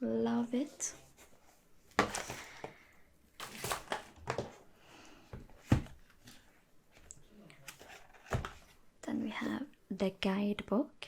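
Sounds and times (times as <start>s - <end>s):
cardboard and paper rustling: 2.0s - 2.8s, 3.4s - 4.6s, 5.4s - 8.8s.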